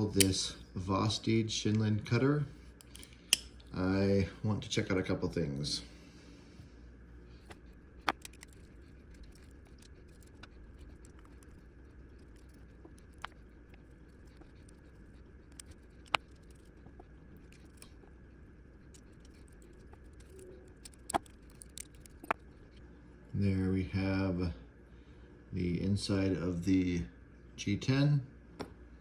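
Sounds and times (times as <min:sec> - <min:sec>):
faint room hum: 0:00.0 - 0:29.0
clicks of folding knife handling: 0:02.8 - 0:03.5.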